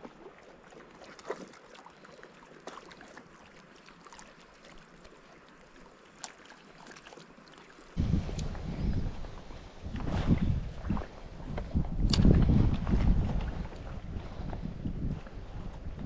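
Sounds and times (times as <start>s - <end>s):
wind buffeting microphone: 8.0s - 16.0s.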